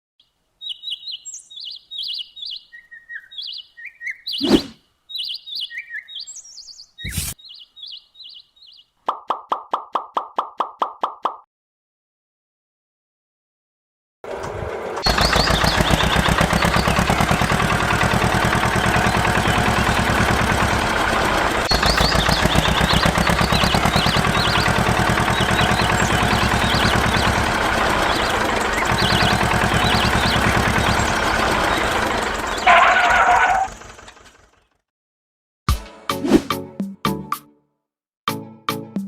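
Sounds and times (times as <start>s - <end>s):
small engine running: 14.3s - 34.8s.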